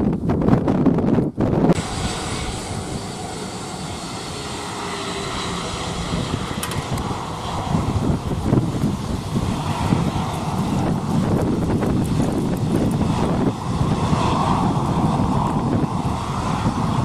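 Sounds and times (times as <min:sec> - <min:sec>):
airliner engines rushing: 0:00.0 - 0:17.0
wind buffeting microphone: 0:00.0 - 0:17.0
faint high whine: 0:01.8 - 0:10.6.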